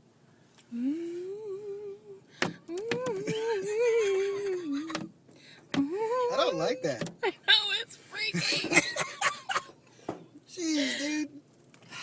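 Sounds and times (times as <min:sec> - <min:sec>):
person humming: 0:00.7 - 0:05.1.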